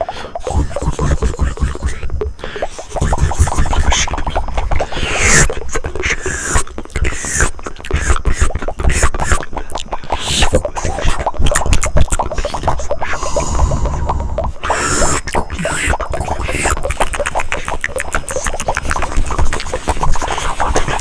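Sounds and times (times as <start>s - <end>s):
tongue and lip clicks: 0.0s - 21.0s
breathy hissing sweeps: 12.4s - 19.2s.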